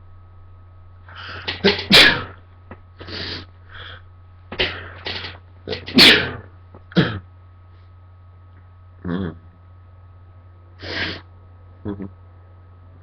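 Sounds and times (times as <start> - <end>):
person sneezing: 1.2 - 2.4, 4.6 - 6.4.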